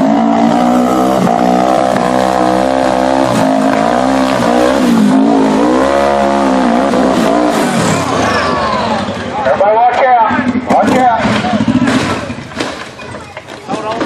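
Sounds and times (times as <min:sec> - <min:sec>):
engine revving hard: 0:00.0 - 0:09.2, 0:10.3 - 0:12.5.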